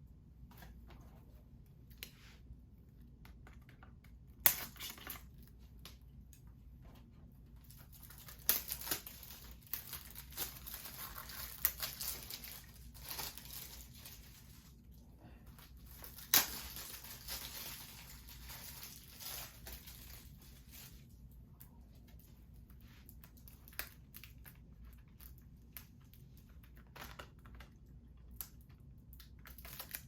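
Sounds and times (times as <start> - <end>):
sharp plastic snaps: 3.2 - 6.4
plastic shrink-wrap crinkling: 7.7 - 21.3, 29.2 - 30.0.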